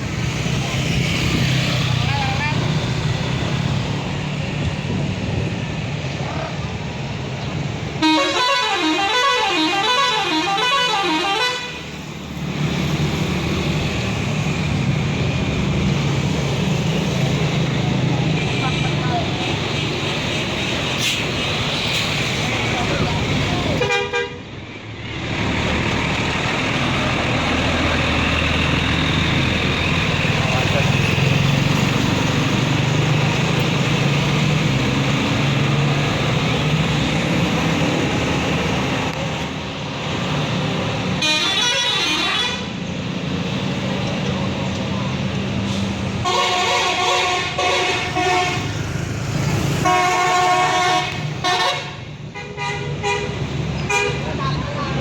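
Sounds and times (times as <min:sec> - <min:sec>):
bus diesel engine rumbling: 0:00.0 - 0:55.0
multi-tone bus horn tune: 0:08.0 - 0:11.9, 0:23.8 - 0:24.5, 0:41.1 - 0:42.8, 0:46.2 - 0:48.8, 0:49.8 - 0:54.8.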